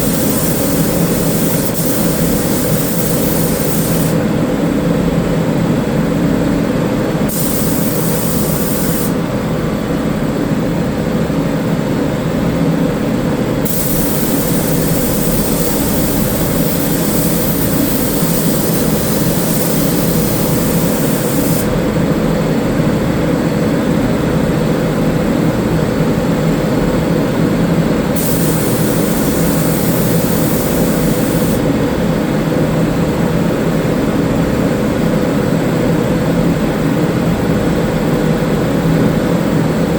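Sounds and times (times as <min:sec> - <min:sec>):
paint spray gun hissing: 0:00.0 - 0:04.2, 0:07.3 - 0:09.2, 0:13.6 - 0:21.8, 0:28.2 - 0:31.7
steady machine drone: 0:00.0 - 0:11.3, 0:11.9 - 0:23.3, 0:28.1 - 0:32.5.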